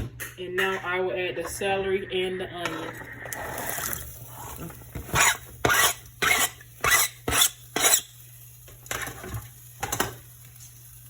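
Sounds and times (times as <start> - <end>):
spoon scraping a bowl: 5.1 - 8.1.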